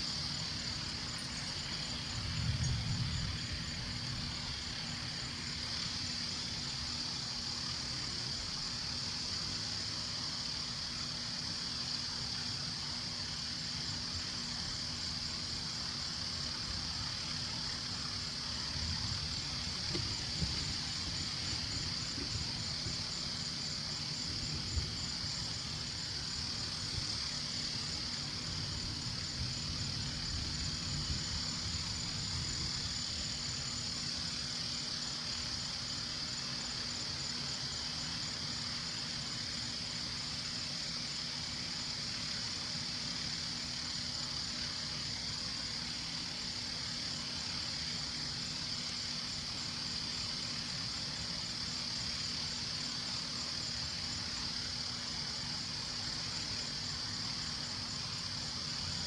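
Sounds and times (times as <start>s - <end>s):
night insects trilling: 0.0s - 59.0s.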